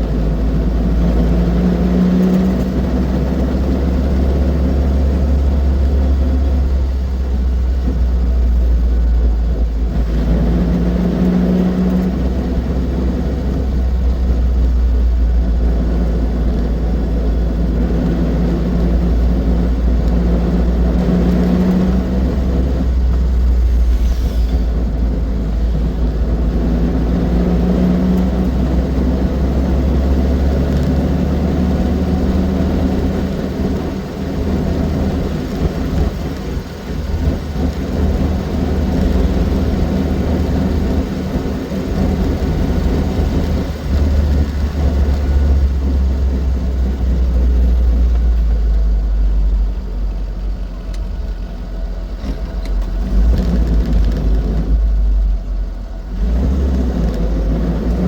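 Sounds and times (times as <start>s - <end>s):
car engine rumbling: 0.0s - 58.0s.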